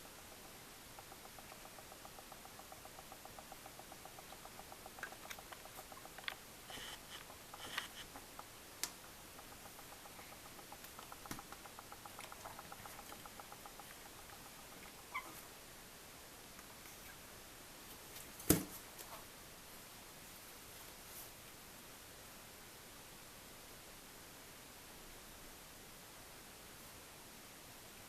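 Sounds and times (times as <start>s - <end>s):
soft ticking of preening birds: 0.0s - 15.5s.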